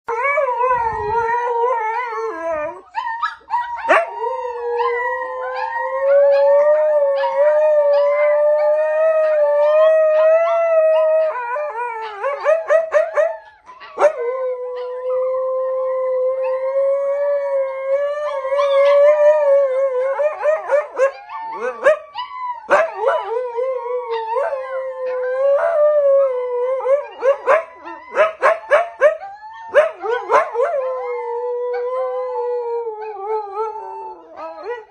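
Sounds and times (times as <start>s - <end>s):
dog howling: 0.1s - 34.9s
dog yipping and barking: 20.7s - 23.2s.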